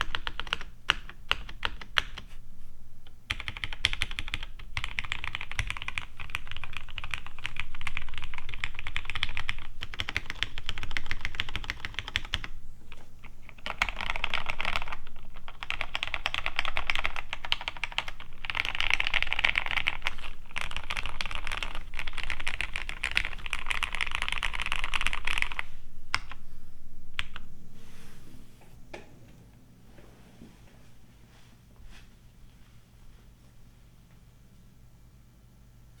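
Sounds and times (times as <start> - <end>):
fast typing on mechanical keyboard: 0.0 - 2.3, 3.3 - 26.4.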